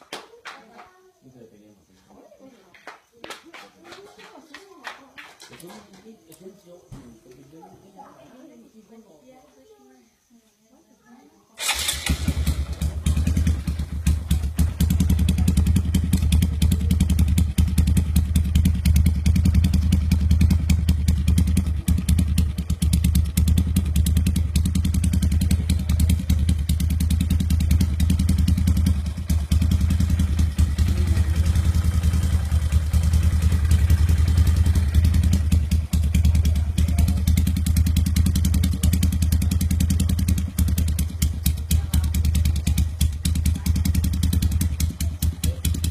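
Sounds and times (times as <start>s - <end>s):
motorcycle idling: 11.6s - 45.9s.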